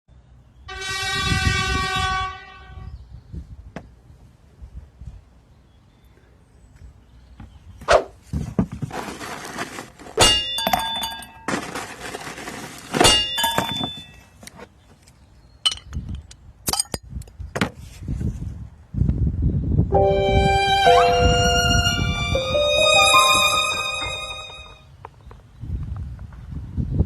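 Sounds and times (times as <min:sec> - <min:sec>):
multi-tone ringing: 0:20.0 - 0:24.8.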